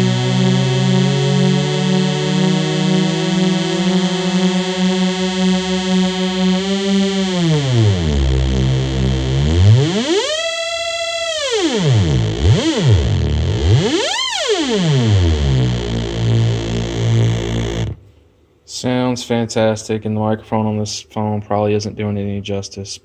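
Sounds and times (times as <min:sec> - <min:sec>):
synth tone sweeping in pitch: 0:00.0 - 0:18.0.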